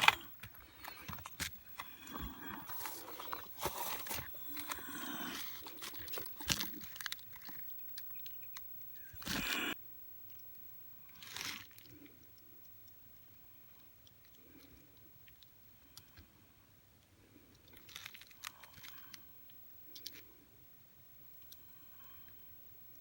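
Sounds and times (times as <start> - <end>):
handling rustle: 0.0 - 9.8.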